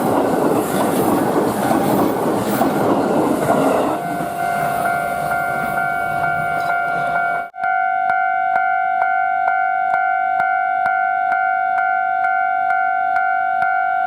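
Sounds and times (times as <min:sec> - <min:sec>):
passing train rumble: 0:00.0 - 0:07.5.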